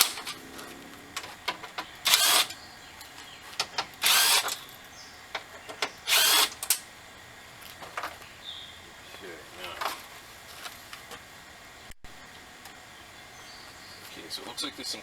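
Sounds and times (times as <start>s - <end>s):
power drill-driver spinning bolts: 2.0s - 2.6s, 3.9s - 4.7s, 6.0s - 6.8s.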